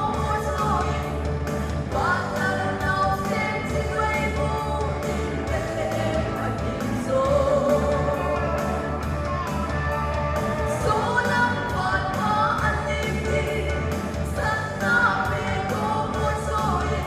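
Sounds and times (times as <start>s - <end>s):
person singing: 0.0s - 17.0s
band with heavy bass beat: 4.6s - 14.8s.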